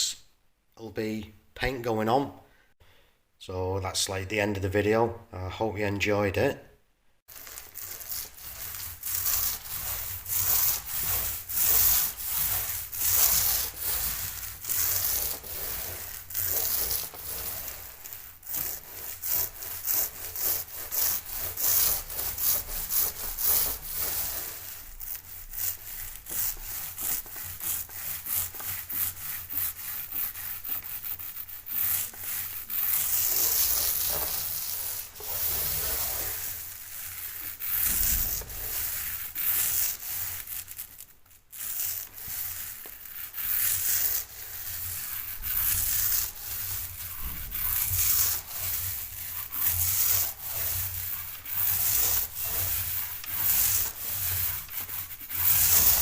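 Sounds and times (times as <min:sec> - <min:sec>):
sandpaper scrubbing back and forth: 0:07.3 - 0:56.0.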